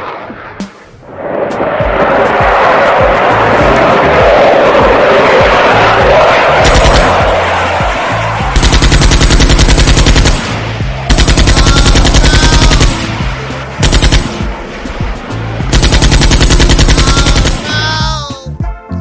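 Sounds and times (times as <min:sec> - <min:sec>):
background music: 0:00.6 - 0:19.0
machine-gun fire: 0:06.6 - 0:07.7, 0:08.4 - 0:14.6, 0:15.7 - 0:17.7.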